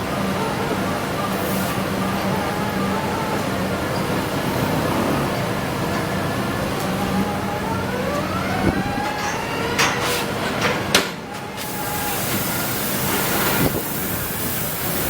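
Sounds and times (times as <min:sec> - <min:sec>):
diesel engine running: 0:00.0 - 0:15.0
rising whine: 0:02.5 - 0:10.0.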